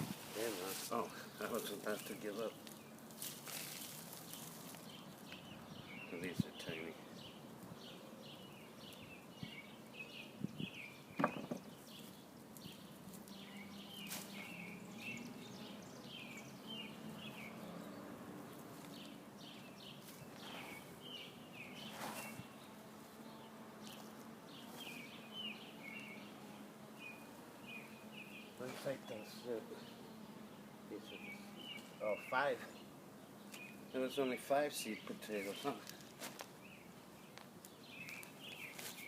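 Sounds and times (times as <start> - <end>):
birds chirping: 0.0 - 39.0
soft knocks: 11.2 - 11.6.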